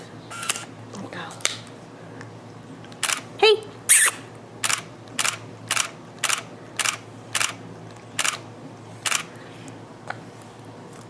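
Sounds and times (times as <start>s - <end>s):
camera shutter clacks: 0.4s - 0.7s, 3.0s - 3.3s, 4.6s - 7.6s, 8.2s - 8.4s, 9.0s - 9.3s.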